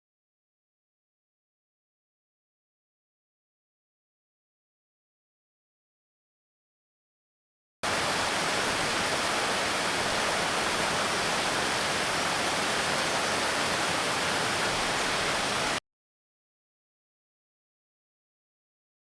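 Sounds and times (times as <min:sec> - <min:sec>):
rushing water: 0:07.8 - 0:15.8.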